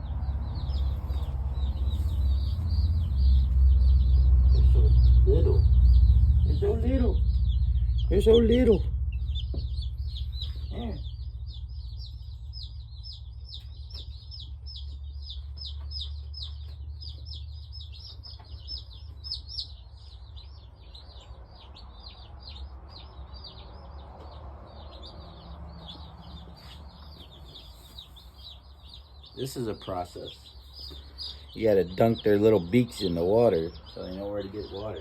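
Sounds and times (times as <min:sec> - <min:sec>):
steady low hum: 0:00.0 - 0:20.3
chicks peeping: 0:00.0 - 0:35.0.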